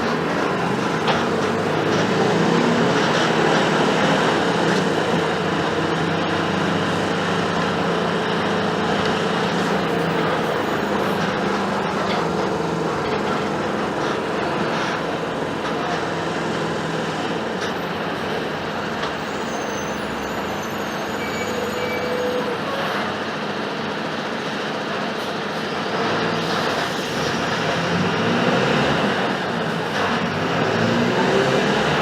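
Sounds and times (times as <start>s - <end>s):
bus diesel engine running: 0.0s - 32.0s.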